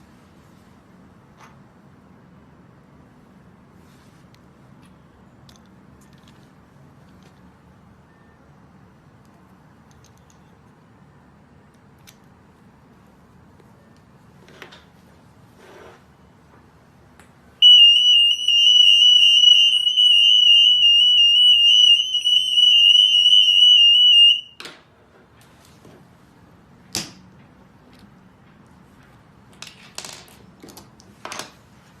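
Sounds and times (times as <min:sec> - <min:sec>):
high-pitched alarm tone: 0:17.6 - 0:24.5.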